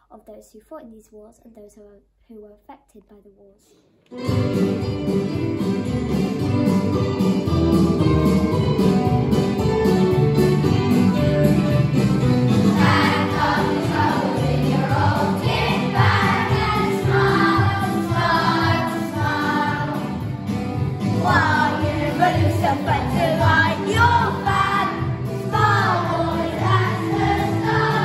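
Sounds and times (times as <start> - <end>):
instrumental accompaniment: 4.1 - 28.0
group singing: 12.6 - 20.3, 21.0 - 28.0.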